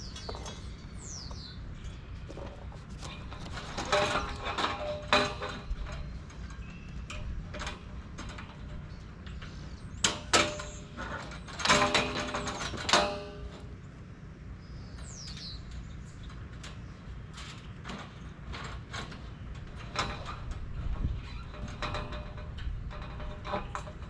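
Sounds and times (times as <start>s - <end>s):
steel panels clanking: 0.0s - 13.9s, 15.0s - 24.0s.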